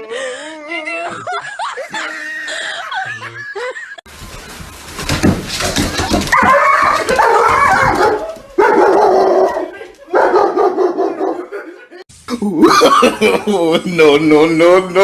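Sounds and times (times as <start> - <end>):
background noise: 0.0 - 15.0
laughter: 1.0 - 4.1, 11.2 - 13.9
dog barking: 6.3 - 11.6.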